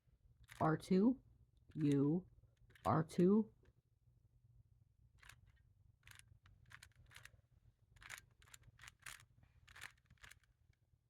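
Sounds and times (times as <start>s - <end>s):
puzzle cube layers clicking: 8.0s - 10.5s.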